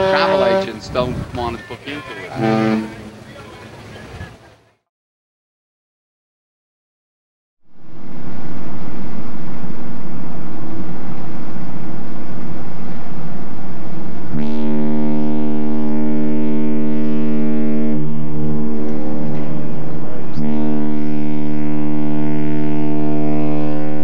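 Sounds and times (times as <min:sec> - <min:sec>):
ship's horn blast: 0:00.0 - 0:04.4, 0:07.7 - 0:24.0
noisy rumble with low tones: 0:07.7 - 0:24.0.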